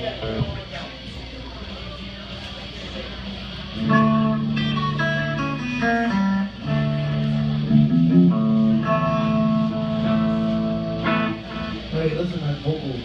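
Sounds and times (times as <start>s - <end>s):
guitar playing notes and chords: 3.1s - 13.0s.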